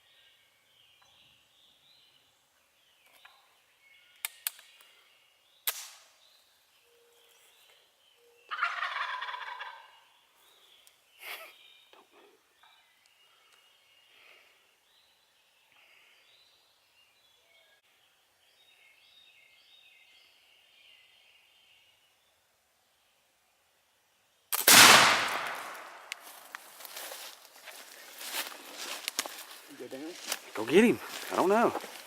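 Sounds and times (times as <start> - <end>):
sharp clicks: 5.6 - 6.0
turkey gobbling: 8.5 - 9.9.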